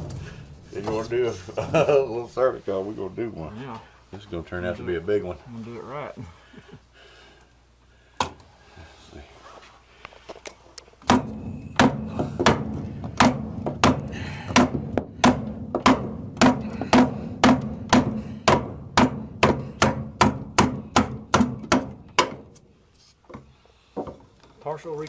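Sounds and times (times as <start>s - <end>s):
rapid hammer blows: 11.1s - 22.4s.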